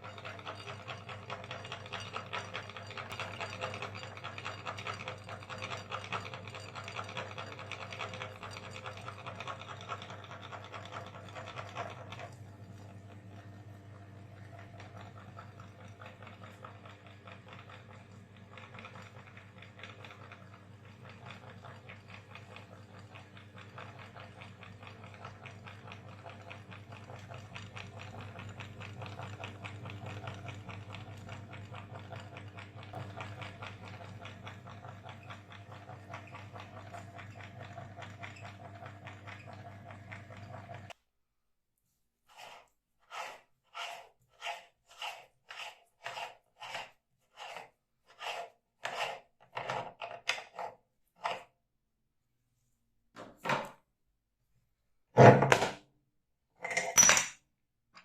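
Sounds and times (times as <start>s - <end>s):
electric meat grinder running: 0.0s - 40.9s.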